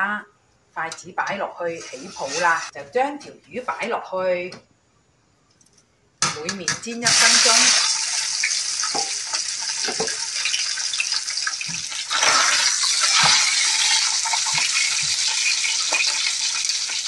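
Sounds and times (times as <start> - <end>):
fish frying in hot oil: 7.0 - 17.0.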